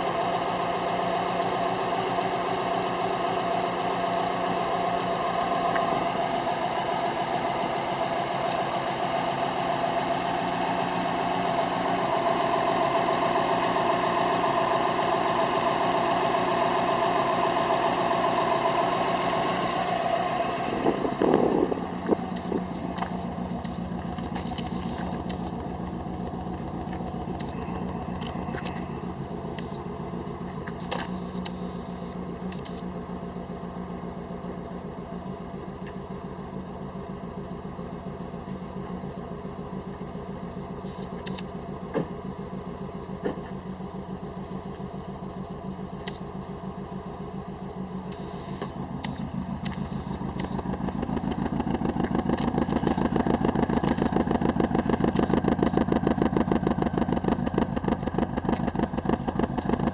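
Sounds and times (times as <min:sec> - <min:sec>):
engine misfiring: 0:00.0 - 0:59.9
sharp engine ticks: 0:21.1 - 0:33.0, 0:45.4 - 0:46.5, 0:47.9 - 0:59.9.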